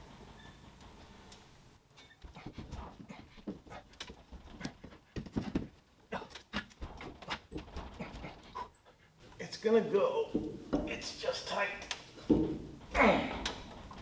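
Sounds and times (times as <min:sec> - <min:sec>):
wood and hardware knocking: 0:02.2 - 0:05.8, 0:10.3 - 0:11.0, 0:12.2 - 0:12.7
heavy breathing: 0:02.3 - 0:09.4.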